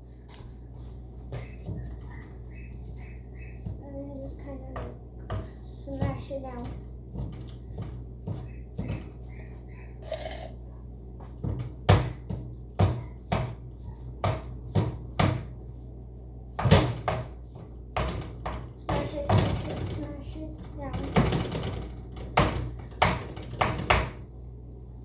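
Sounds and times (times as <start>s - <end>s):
steady low hum: 0.0s - 25.0s
utensil knocking and scraping pan: 10.0s - 10.6s.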